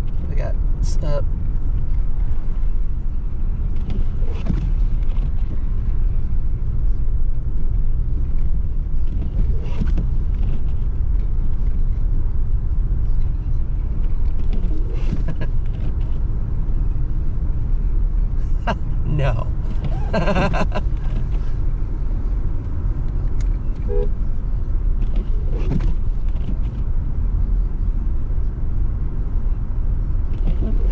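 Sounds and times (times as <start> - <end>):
car driving on slushy snow: 1.2 - 12.3, 13.0 - 22.4.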